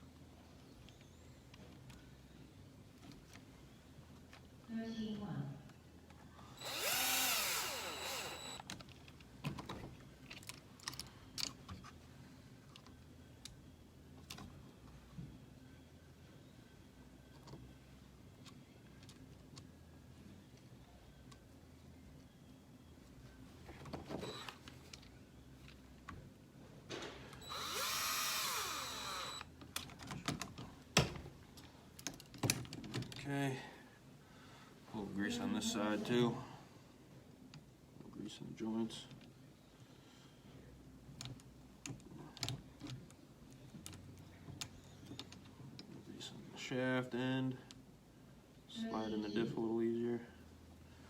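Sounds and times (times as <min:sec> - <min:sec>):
electric screwdriver whirring: 0:06.6 - 0:08.7, 0:24.2 - 0:24.6, 0:27.4 - 0:29.5
small parts and tools clicking: 0:06.6 - 0:12.0.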